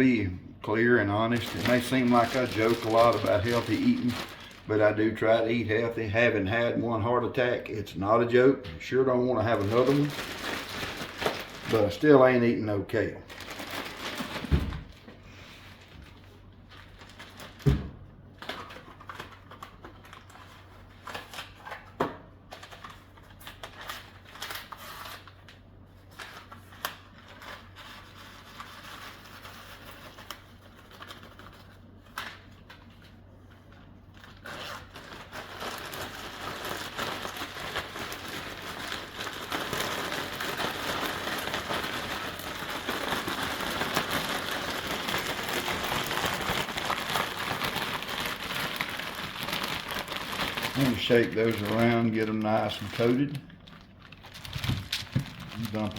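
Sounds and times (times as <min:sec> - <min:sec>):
plastic zip bag crinkling: 0:00.8 - 0:06.6, 0:09.0 - 0:12.5, 0:13.2 - 0:15.1, 0:34.1 - 0:55.9
potatoes shaken in a bag: 0:01.2 - 0:05.3, 0:09.4 - 0:12.4, 0:13.3 - 0:14.5, 0:35.5 - 0:53.4, 0:54.2 - 0:55.9.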